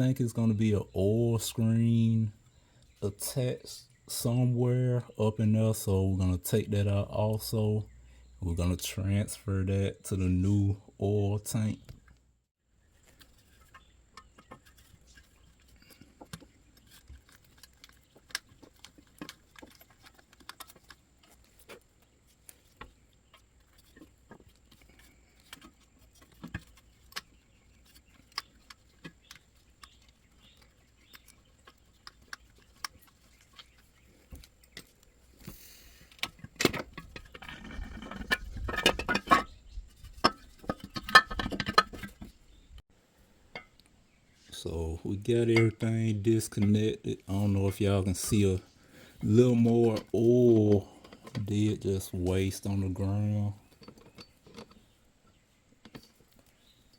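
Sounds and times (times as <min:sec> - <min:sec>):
metallic clattering and clinking: 0:36.2 - 0:42.4.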